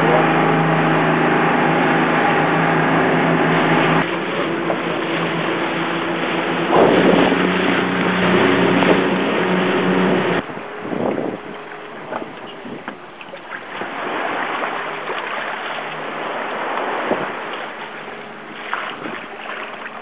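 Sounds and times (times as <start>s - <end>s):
rushing wind: 0.0s - 19.3s
boat engine running: 0.0s - 20.0s
water noise: 0.0s - 20.0s.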